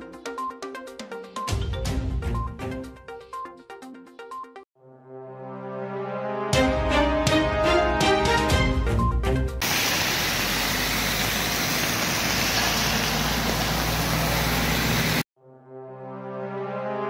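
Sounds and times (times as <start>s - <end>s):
background music: 0.0s - 9.6s, 15.4s - 17.0s.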